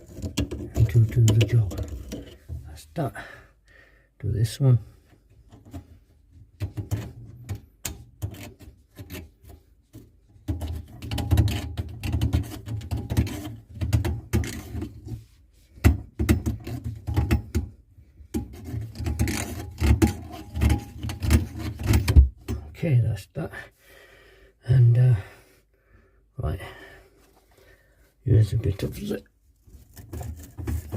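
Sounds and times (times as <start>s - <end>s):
deburring tool scraping copper pipe: 0.0s - 2.8s, 5.3s - 22.6s, 28.9s - 30.9s.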